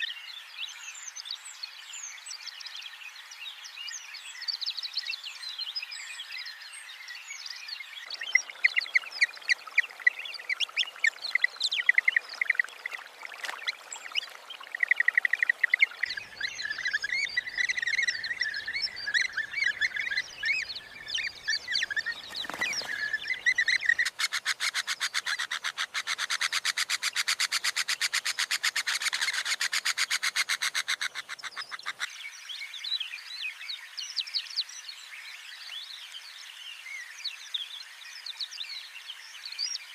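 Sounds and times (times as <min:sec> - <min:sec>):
birds chirping and calling: 0:08.0 - 0:32.4.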